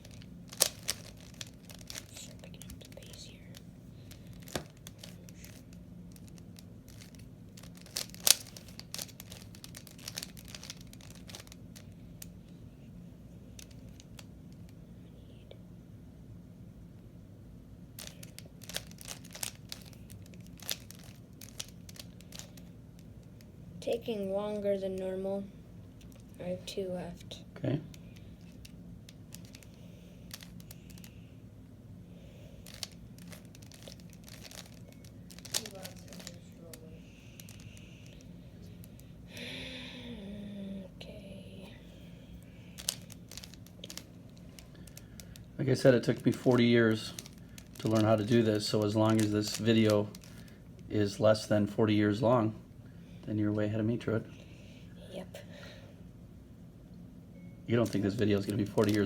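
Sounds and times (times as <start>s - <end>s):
faint low hum: 0.0s - 59.0s
puzzle cube clicking as turned: 0.1s - 2.1s, 6.2s - 11.6s.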